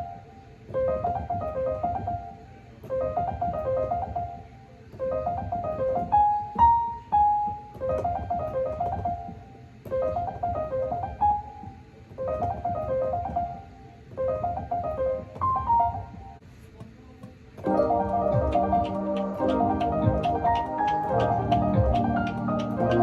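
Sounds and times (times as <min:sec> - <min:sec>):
keyboard playing quick notes: 0:17.6 - 0:23.0.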